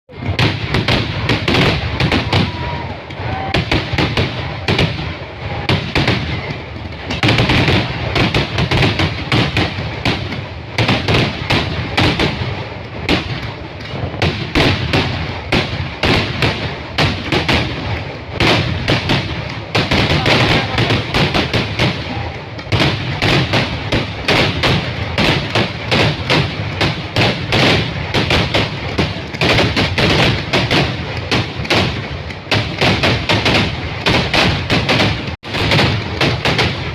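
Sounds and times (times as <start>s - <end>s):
barrage of firework explosions: 0.1s - 36.9s.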